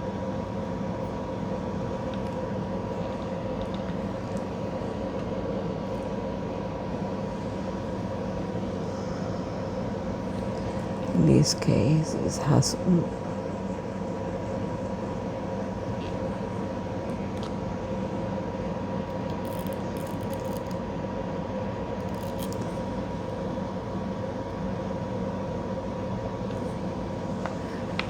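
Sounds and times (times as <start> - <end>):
steady background hum: 0.0 - 28.0.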